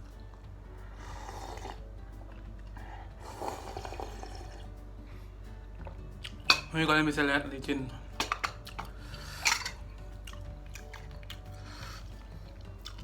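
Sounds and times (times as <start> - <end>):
quiet background music: 0.0 - 13.0
person slurping soup: 0.9 - 1.9, 2.6 - 4.7.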